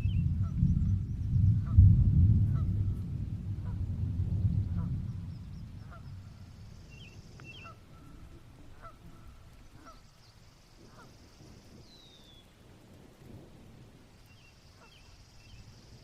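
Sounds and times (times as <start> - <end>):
low rumble: 0.0 - 8.5
faint bird calls: 4.5 - 12.5, 14.3 - 15.7.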